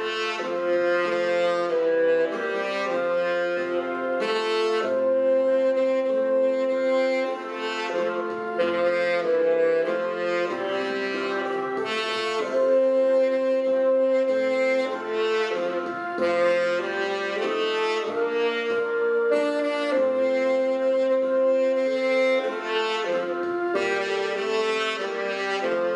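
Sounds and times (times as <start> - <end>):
saxophone ensemble playing a hymn: 0.0 - 25.9.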